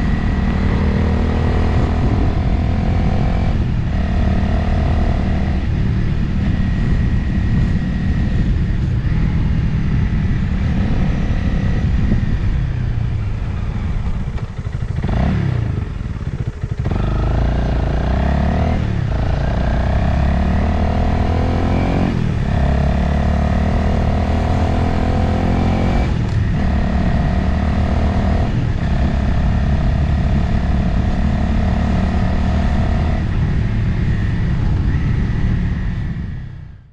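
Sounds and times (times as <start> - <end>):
motorcycle engine running: 0.0 - 36.9
wind on microphone: 0.0 - 36.9.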